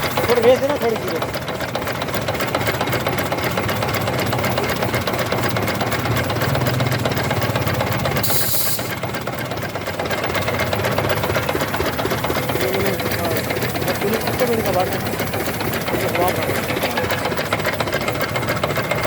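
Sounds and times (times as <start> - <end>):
diesel engine knocking: 0.0 - 19.0
short hiss: 8.2 - 9.0.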